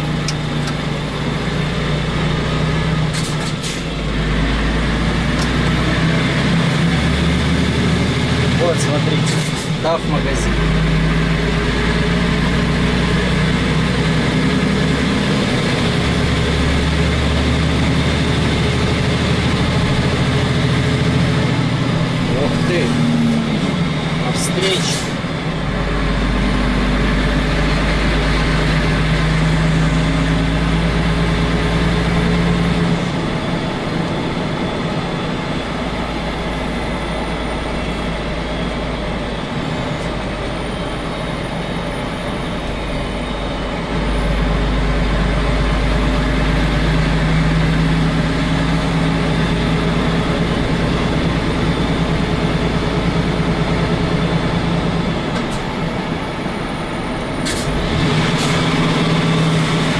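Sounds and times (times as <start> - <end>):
diesel truck engine running: 0.0 - 59.9.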